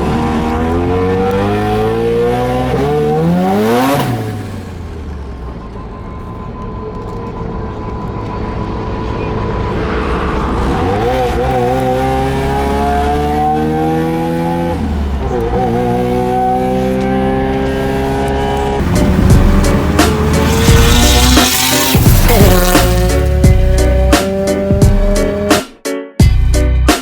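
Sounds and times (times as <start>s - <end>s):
rotary engine accelerating: 0.0s - 25.6s
rough engine noise burst: 18.6s - 23.4s.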